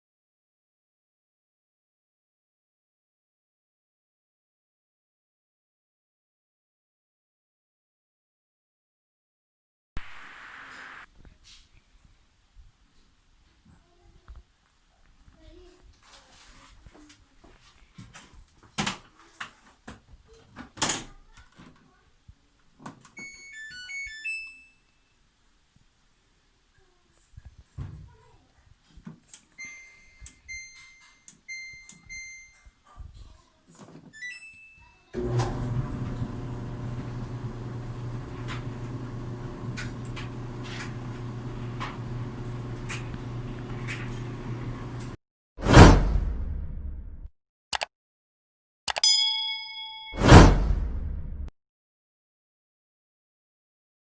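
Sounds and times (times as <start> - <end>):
dryer power-on jingle beeps: 23.2 - 24.9, 29.6 - 32.7, 49.0 - 50.3
clothes dryer humming: 35.2 - 45.2.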